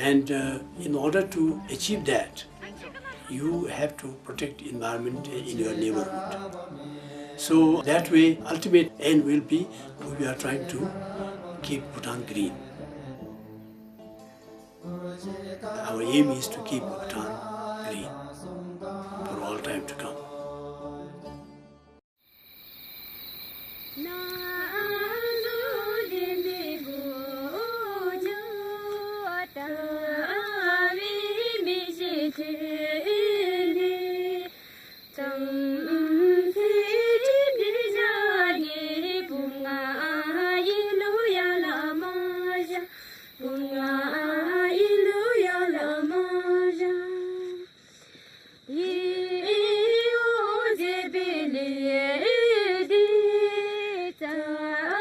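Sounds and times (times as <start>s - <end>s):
singer breathing: 6.8s - 7.4s, 9.7s - 10.0s, 14.2s - 14.7s, 34.5s - 35.1s, 42.8s - 43.4s, 47.7s - 48.7s.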